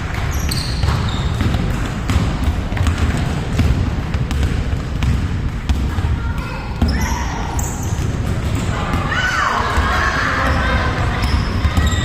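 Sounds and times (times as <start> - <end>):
basketball bouncing on hard floor: 0.1 - 6.1.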